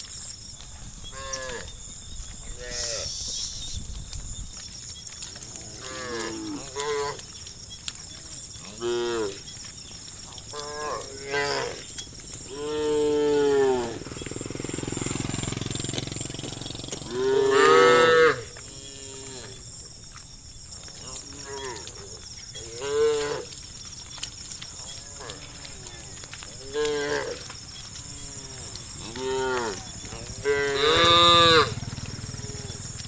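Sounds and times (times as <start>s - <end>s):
cows mooing: 2.5s - 3.2s, 5.4s - 7.3s, 8.6s - 9.4s, 10.3s - 19.6s, 21.0s - 23.7s, 24.7s - 33.0s.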